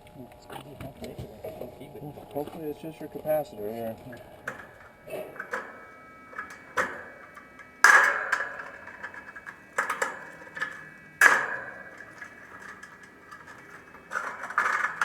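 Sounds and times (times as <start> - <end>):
sharp metallic clanks: 4.0 - 15.0
small metal clicks and rattles: 4.0 - 15.0.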